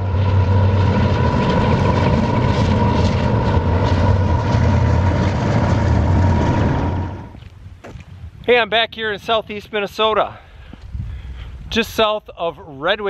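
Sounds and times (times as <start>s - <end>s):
train rumbling on tracks: 0.0s - 7.4s.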